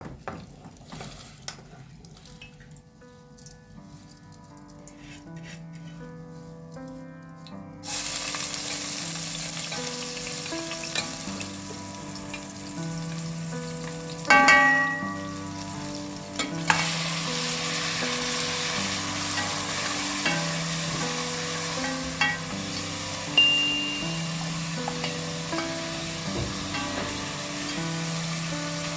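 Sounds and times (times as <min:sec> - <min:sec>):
soft background music: 0:00.5 - 0:28.9
food sizzling in oil: 0:07.8 - 0:28.9.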